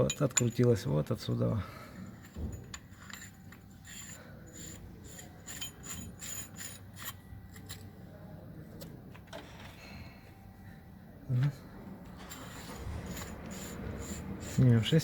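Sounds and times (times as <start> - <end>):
light scraping of tools: 2.2 - 7.9, 12.1 - 15.0.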